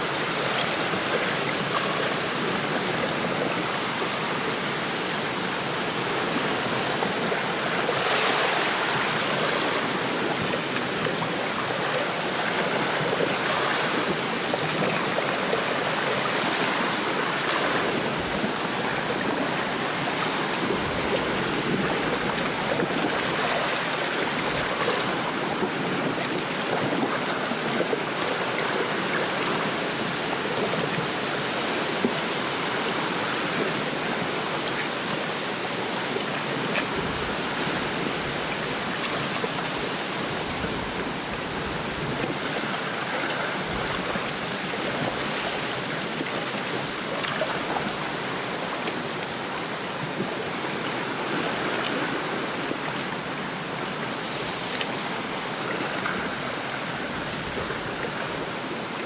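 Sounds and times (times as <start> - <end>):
small waves lapping: 0.0 - 59.0
wind rushing through reeds: 12.4 - 27.6, 35.4 - 48.1, 51.4 - 59.0.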